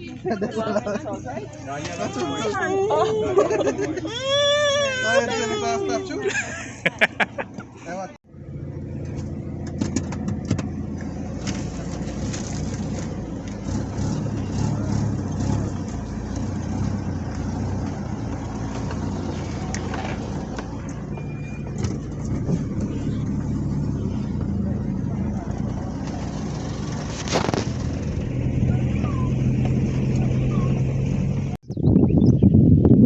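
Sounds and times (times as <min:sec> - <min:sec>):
engine running with low hum: 0:00.0 - 0:33.0.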